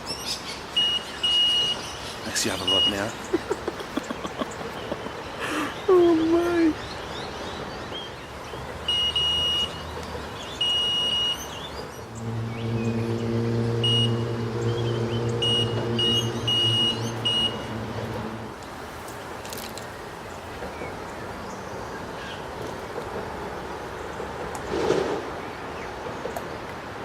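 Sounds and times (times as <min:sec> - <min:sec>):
bite alarm beeping: 0:02.6 - 0:03.1, 0:08.9 - 0:09.8, 0:10.6 - 0:11.5, 0:12.1 - 0:18.5
motor low hum: 0:11.9 - 0:18.7.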